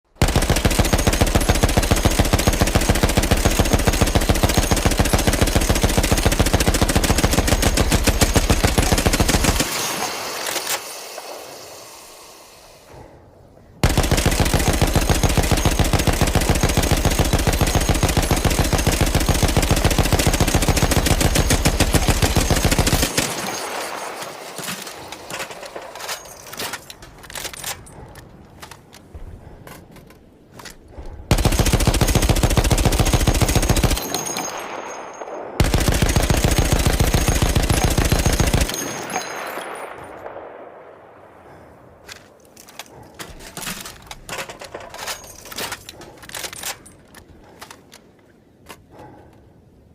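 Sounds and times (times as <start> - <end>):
machine gun firing bursts: 0.1 - 11.7, 13.8 - 26.5, 31.3 - 39.6.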